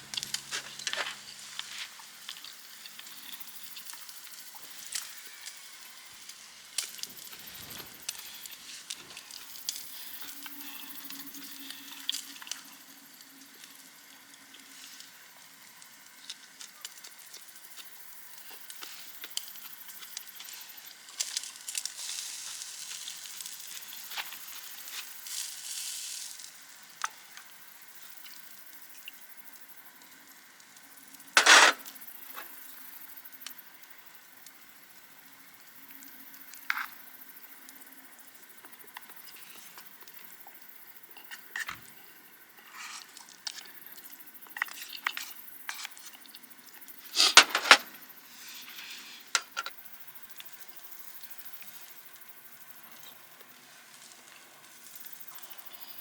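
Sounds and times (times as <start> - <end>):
food frying and sizzling: 0.0 - 56.0
small crackles: 0.0 - 56.0.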